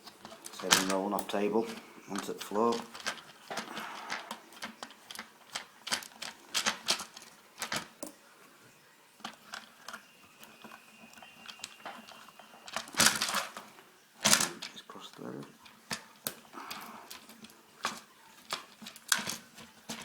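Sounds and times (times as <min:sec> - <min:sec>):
screws clattering: 0:00.0 - 0:07.9.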